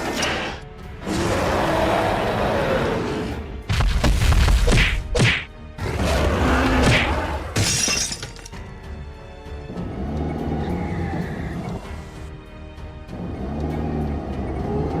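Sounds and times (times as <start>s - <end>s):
whacking thuds: 3.7s - 5.5s.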